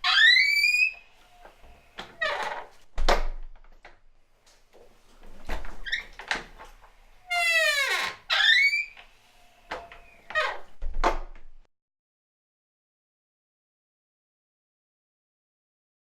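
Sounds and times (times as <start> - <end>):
wooden door creaking: 0.0 - 3.7, 5.2 - 11.6.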